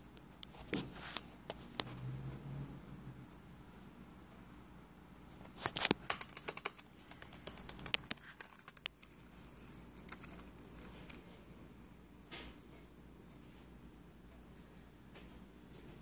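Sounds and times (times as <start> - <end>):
laptop keys clicking: 5.7 - 9.2.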